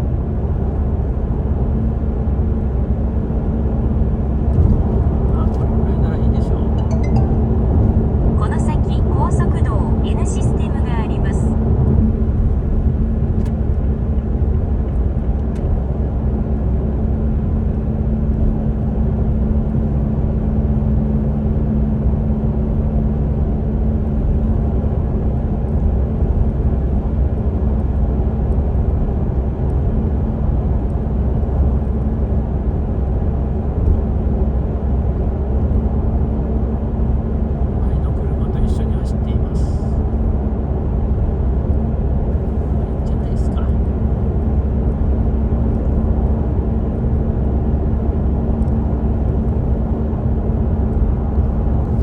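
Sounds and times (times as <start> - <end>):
car rumble: 0.3 - 52.0
lower hum: 3.8 - 15.0, 37.6 - 52.0
steady hum: 37.8 - 52.0.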